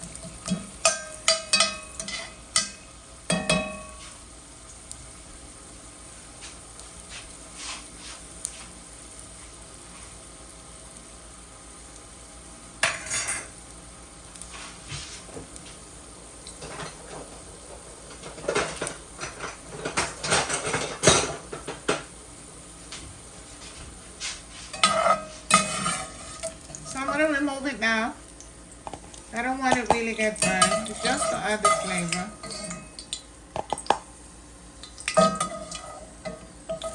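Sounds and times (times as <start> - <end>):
oil sizzling: 0.0 - 36.9
metal utensils clinking and scraping: 0.8 - 2.8, 16.6 - 17.3, 18.1 - 21.7, 24.7 - 27.4, 30.0 - 32.9.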